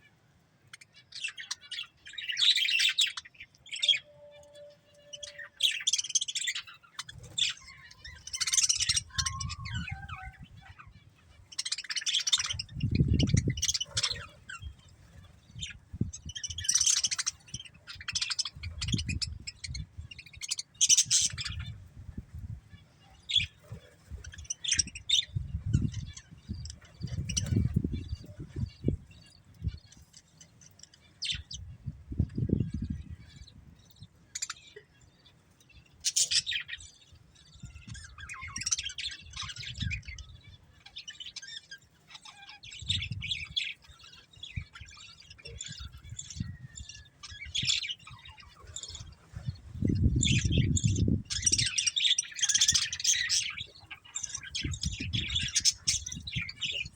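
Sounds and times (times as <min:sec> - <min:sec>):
budgerigars chirping and warbling: 0:00.0 - 0:56.9.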